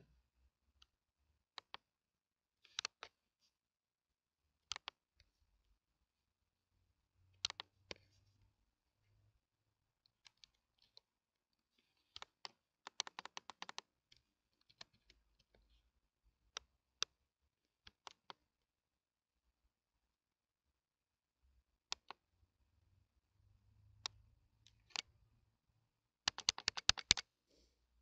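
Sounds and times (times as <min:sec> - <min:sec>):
mouse clicks: 0:01.6 - 0:01.8, 0:02.7 - 0:03.2, 0:04.7 - 0:05.0, 0:07.4 - 0:08.0, 0:12.0 - 0:13.9, 0:17.9 - 0:18.4, 0:21.9 - 0:22.2, 0:24.0 - 0:25.1, 0:26.2 - 0:27.3
keyboard typing: 0:02.7 - 0:03.2, 0:04.7 - 0:05.0, 0:07.4 - 0:08.2, 0:11.8 - 0:13.9, 0:17.9 - 0:18.4, 0:24.7 - 0:25.1, 0:26.2 - 0:27.3.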